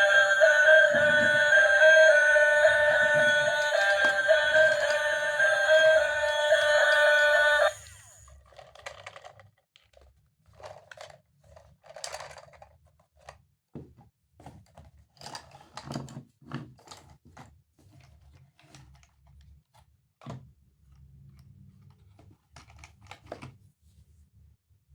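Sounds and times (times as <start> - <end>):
low steady hum: 0.0 - 8.2.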